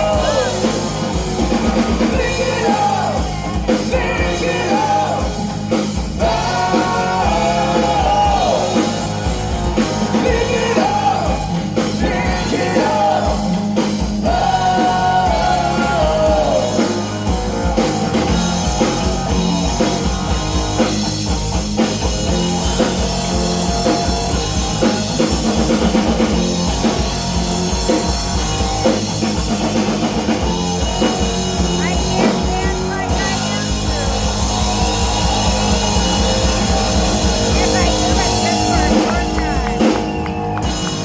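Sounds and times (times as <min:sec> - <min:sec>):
drum kit beat: 0:00.0 - 0:41.0
electric guitar: 0:00.0 - 0:41.0
rock band playing: 0:00.0 - 0:41.0.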